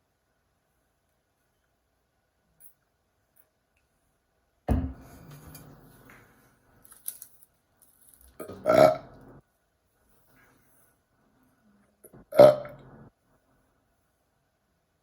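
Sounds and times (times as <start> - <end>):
loud burps: 8.4 - 9.2, 12.0 - 13.0.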